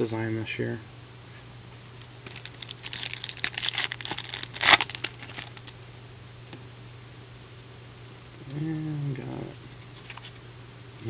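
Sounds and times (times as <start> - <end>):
wrapper tearing and crinkling: 2.0 - 5.8.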